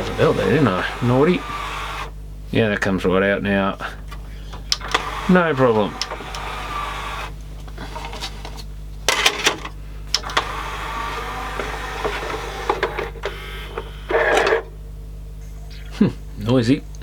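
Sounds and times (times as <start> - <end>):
small motor whirring through gears: 0.0 - 2.1, 4.8 - 7.3, 10.3 - 13.1
sharp mechanical clicks: 4.7 - 7.4, 9.1 - 13.2.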